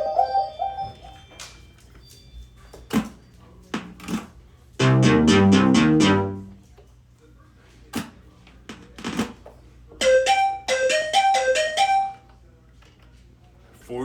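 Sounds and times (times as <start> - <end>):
synthesizer fast flurry of notes: 4.8 - 6.6.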